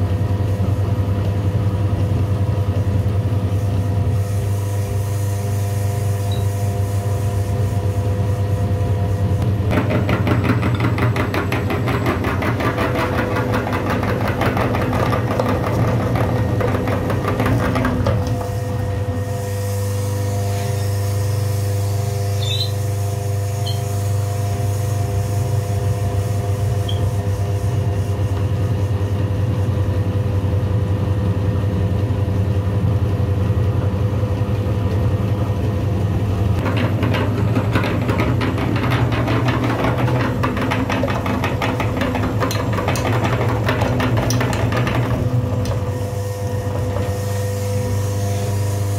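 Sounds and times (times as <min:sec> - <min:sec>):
fast rattling buzz: 0:36.6 - 0:47.1.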